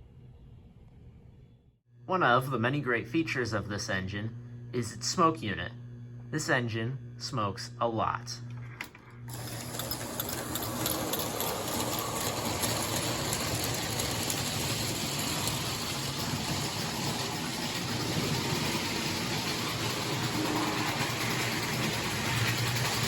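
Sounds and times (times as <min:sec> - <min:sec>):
toy train motor whirring: 0:09.3 - 0:23.0
wheels rattling on rail: 0:09.3 - 0:23.0.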